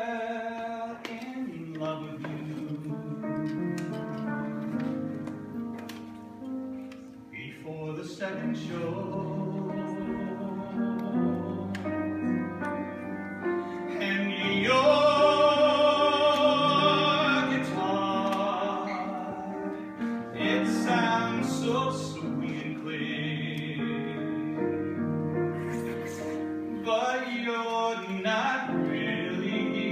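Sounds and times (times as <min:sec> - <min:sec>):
instrumental accompaniment: 0:00.5 - 0:29.9
person singing live: 0:13.7 - 0:24.3.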